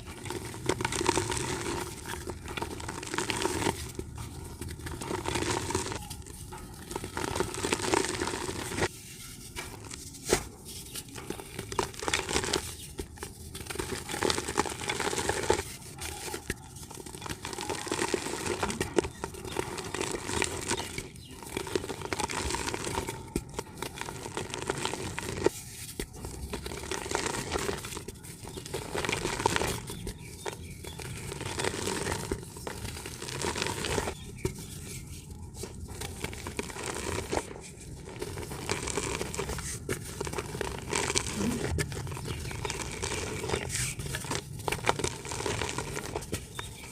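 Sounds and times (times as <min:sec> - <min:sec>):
dirt crumbling with crackles: 0:00.0 - 0:46.9.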